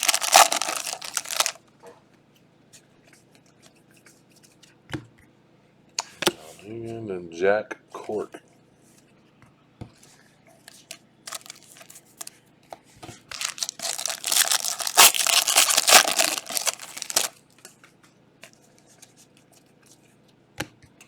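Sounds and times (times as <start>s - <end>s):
foil wrapper tearing and crinkling: 0.0s - 1.6s, 11.3s - 12.3s, 13.3s - 17.4s.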